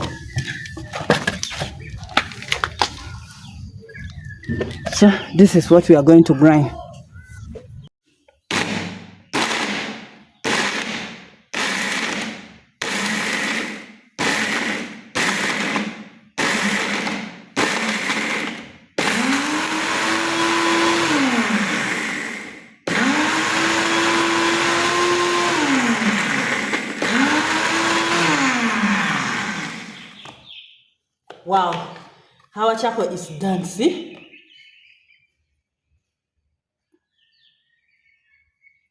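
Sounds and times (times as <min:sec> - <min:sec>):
electric grinder motor: 0:09.4 - 0:09.8, 0:10.5 - 0:30.2.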